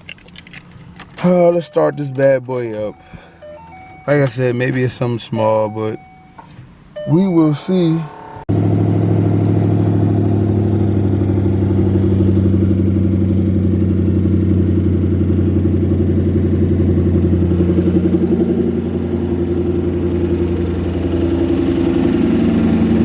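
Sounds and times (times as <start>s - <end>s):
engine idling: 7.9s - 23.0s.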